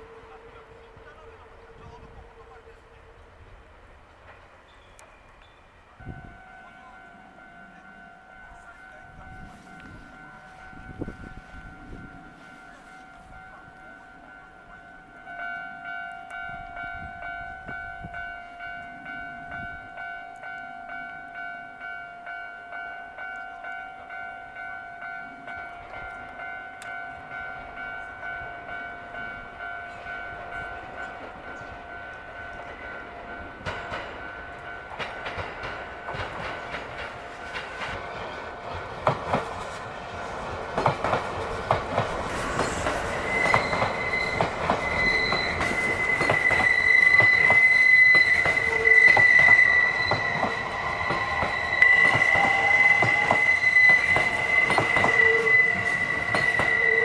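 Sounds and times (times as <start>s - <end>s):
train wheels clacking over rails: 0.0s - 6.6s, 25.7s - 57.0s
level-crossing alarm ringing: 5.3s - 57.0s
high wheel squeal: 41.4s - 57.0s.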